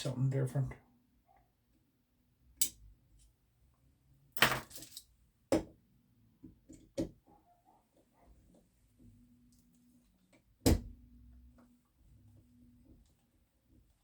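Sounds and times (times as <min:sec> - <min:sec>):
small metal parts clicking: 0:04.4 - 0:05.1.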